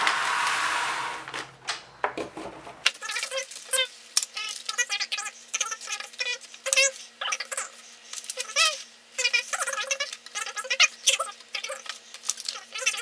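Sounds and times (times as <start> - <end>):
packaging rustling: 11.5 - 13.0.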